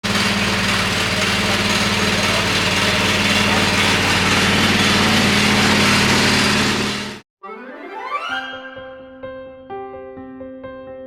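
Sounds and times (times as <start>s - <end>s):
engine humming steadily: 0.0s - 7.2s.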